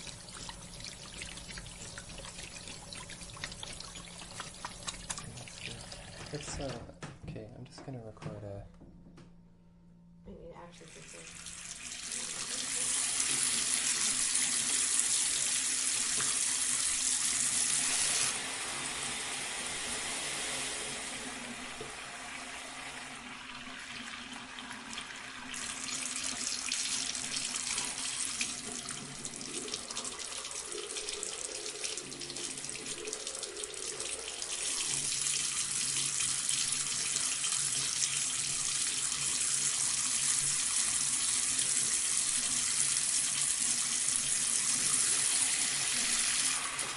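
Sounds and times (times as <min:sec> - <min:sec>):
tap water splashing into basin: 0:00.0 - 0:07.2, 0:16.0 - 0:16.6.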